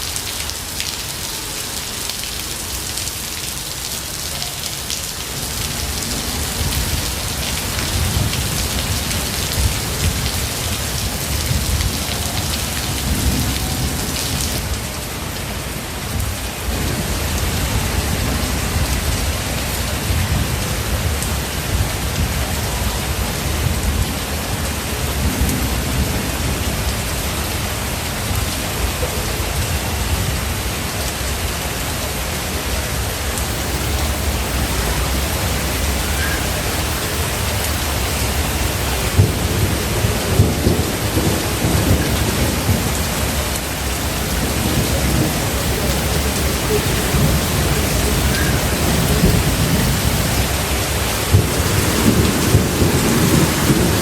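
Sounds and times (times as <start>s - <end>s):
heavy rain falling: 0.0s - 54.0s
low rolling thunder: 5.3s - 14.9s, 33.4s - 54.0s.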